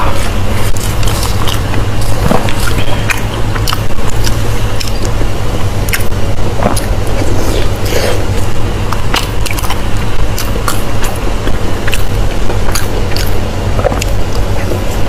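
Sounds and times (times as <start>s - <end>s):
person biting and chewing: 0.0s - 15.0s
steady low hum: 0.0s - 15.0s
wet mouth clicks and smacks: 0.7s - 5.2s.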